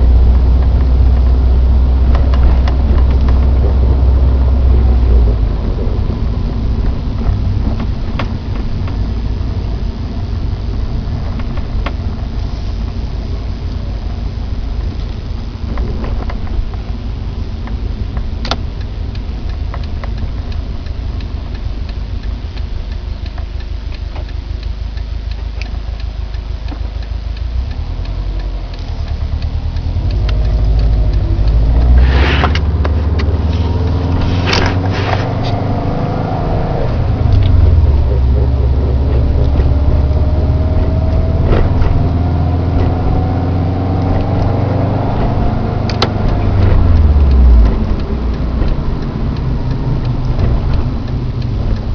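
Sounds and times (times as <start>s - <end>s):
car engine running: 0.0s - 51.9s
rising whine: 0.0s - 51.9s
sharp clicks: 17.6s - 51.9s.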